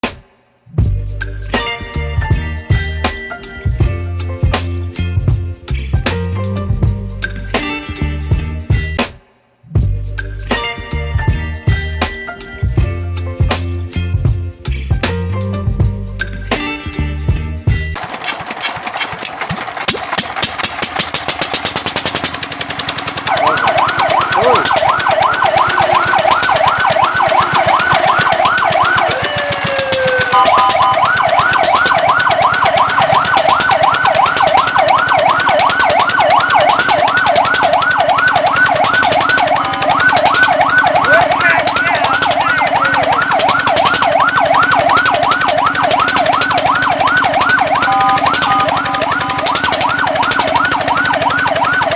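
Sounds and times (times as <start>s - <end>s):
background noise: 0.0s - 0.8s, 9.0s - 9.8s
fire truck siren yelping: 21.0s - 51.9s.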